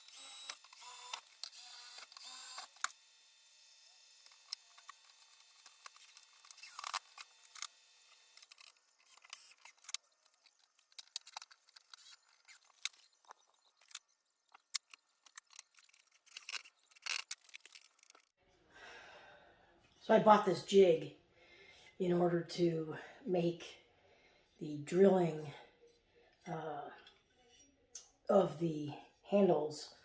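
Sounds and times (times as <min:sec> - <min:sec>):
small hard objects clicking: 0:08.3 - 0:18.3.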